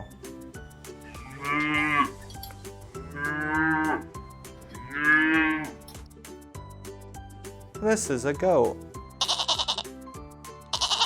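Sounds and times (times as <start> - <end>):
cow mooing: 1.2 - 2.2, 3.1 - 4.2, 4.8 - 5.8.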